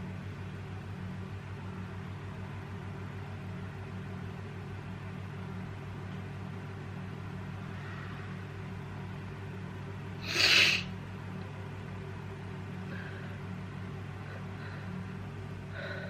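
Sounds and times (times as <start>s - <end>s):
steady low hum: 0.0s - 16.0s
person sneezing: 10.2s - 10.9s.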